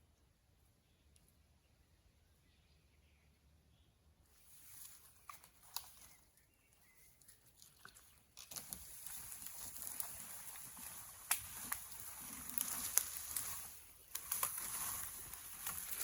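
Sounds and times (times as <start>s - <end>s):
rustling: 4.3s - 16.0s.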